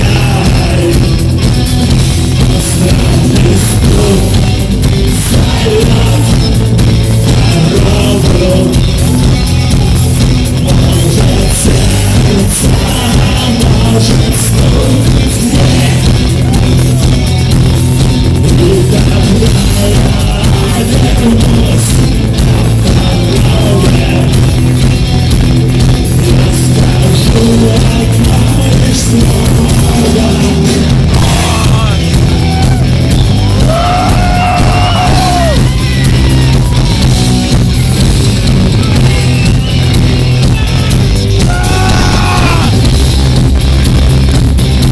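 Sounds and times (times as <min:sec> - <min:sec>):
loud rock music with vocals: 0:00.0 - 0:44.9.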